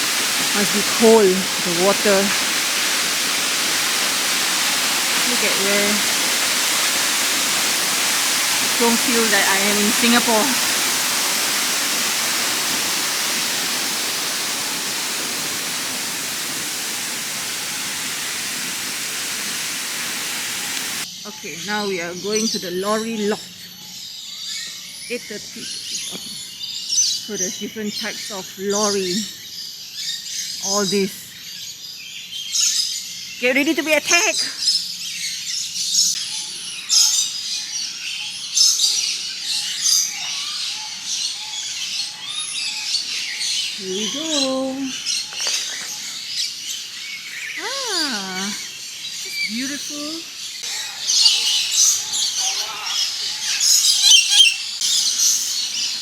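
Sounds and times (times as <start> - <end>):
waterfall rushing: 0.0 - 21.0
parrots calling and squawking: 0.0 - 21.1, 50.6 - 56.0.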